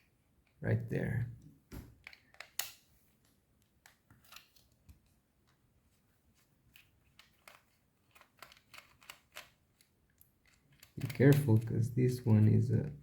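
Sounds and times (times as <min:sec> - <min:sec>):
small plastic parts clicking: 0:02.0 - 0:02.8, 0:06.7 - 0:11.7.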